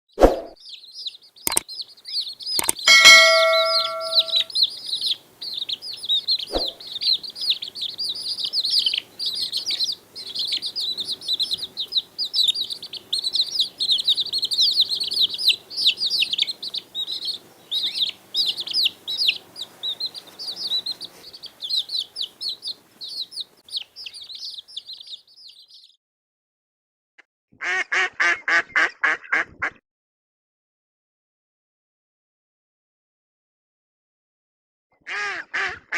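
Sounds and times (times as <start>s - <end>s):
small birds chirping: 0.2s - 26.0s
bell-like ding: 2.6s - 4.5s.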